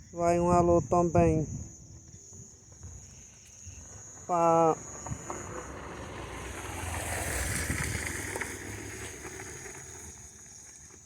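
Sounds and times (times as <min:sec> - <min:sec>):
wind gust on microphone: 0:00.0 - 0:02.1, 0:04.8 - 0:10.7.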